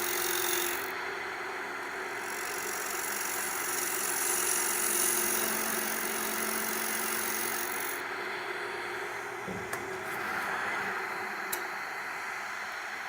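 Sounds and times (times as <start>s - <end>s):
turning tool cutting wood: 0.0s - 1.0s, 1.8s - 8.1s
lathe motor hum: 0.0s - 13.0s.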